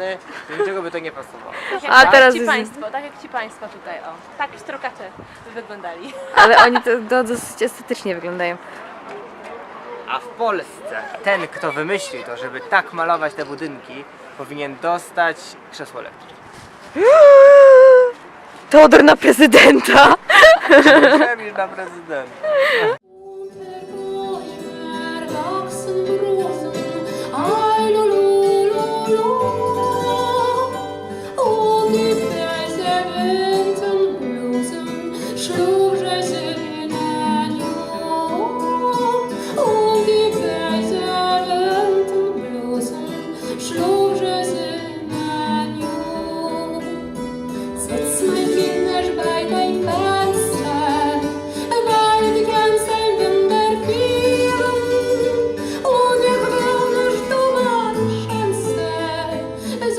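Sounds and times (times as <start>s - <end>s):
woman singing: 1.9s - 2.8s, 23.1s - 59.9s
plucked guitar: 23.4s - 59.9s.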